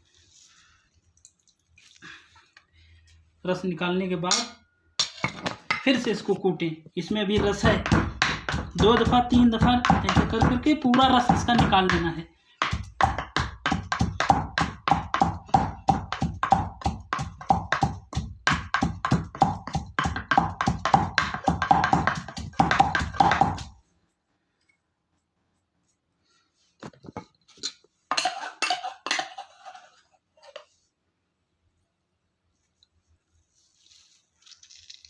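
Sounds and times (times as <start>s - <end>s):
pestle pounding with ringing note: 7.4s - 12.0s, 12.6s - 23.7s
rustling of handling: 32.5s - 35.0s.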